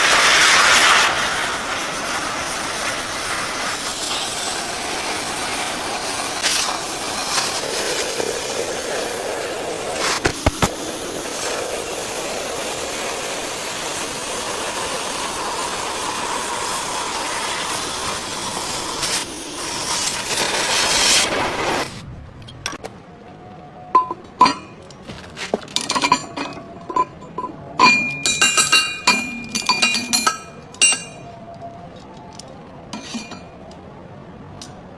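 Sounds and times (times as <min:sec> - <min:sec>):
cutting torch hissing: 0:00.0 - 0:22.1.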